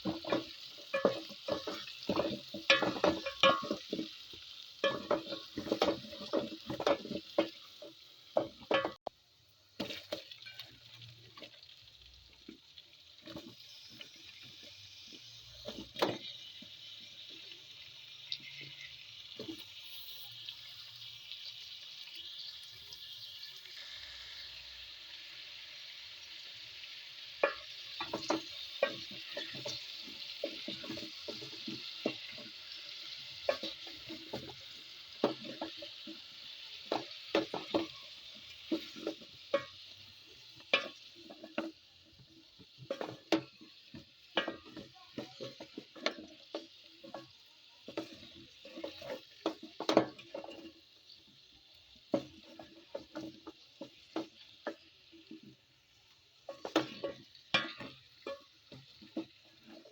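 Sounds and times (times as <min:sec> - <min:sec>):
spoon knocking and scraping pot: 0:00.0 - 0:09.1, 0:13.2 - 0:16.7, 0:27.4 - 0:55.6, 0:56.4 - 0:59.9
food sizzling in pot: 0:00.0 - 0:59.9.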